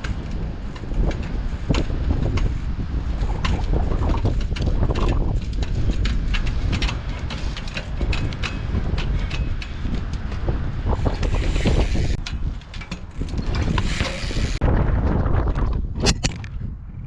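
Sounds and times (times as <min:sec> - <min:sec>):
bike clicks and knocks: 0:00.0 - 0:16.6
wind buffeting microphone: 0:00.0 - 0:17.0.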